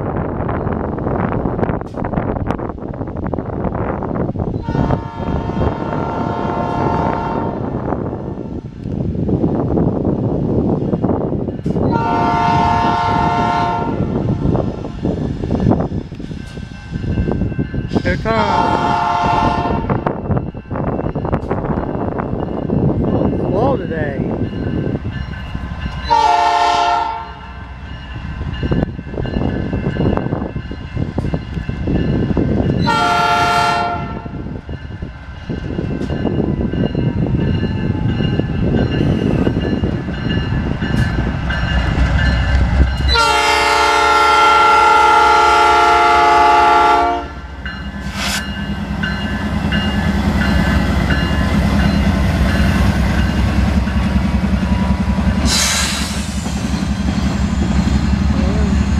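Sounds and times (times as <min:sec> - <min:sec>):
train rumbling past: 0:00.0 - 0:58.9
train air horn blasts: 0:04.6 - 0:07.8, 0:11.9 - 0:14.2, 0:18.5 - 0:20.0, 0:26.1 - 0:27.4, 0:32.8 - 0:34.4, 0:43.1 - 0:47.4.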